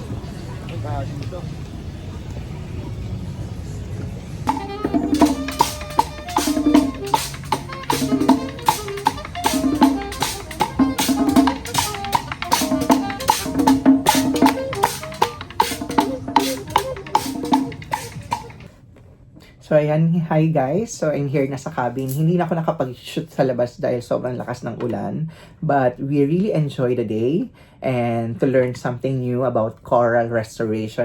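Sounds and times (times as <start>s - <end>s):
busy drum and percussion beat: 4.5s - 18.7s
repeating melodic line: 4.5s - 18.7s.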